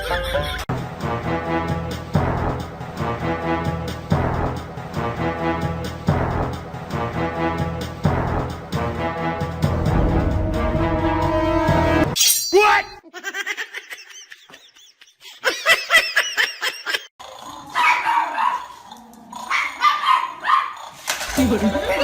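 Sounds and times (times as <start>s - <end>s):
background music: 0.0s - 12.2s, 21.4s - 22.0s
dog barking: 17.7s - 18.8s, 19.5s - 20.8s.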